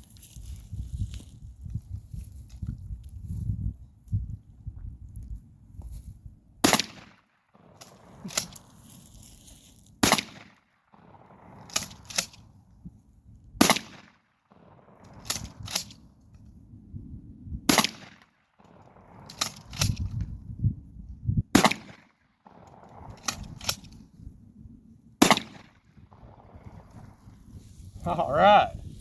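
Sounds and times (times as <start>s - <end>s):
loud gunshots: 6.6s - 8.3s, 13.6s - 15.6s, 17.7s - 19.6s, 21.5s - 23.2s, 25.2s - 26.8s.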